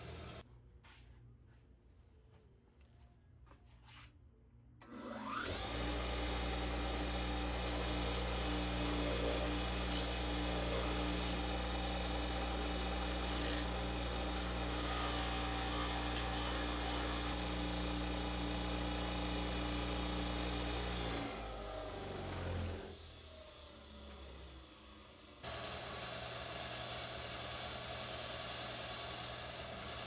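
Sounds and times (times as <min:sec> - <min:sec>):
electric power tool grinding: 0:00.0 - 0:00.4, 0:04.8 - 0:24.6.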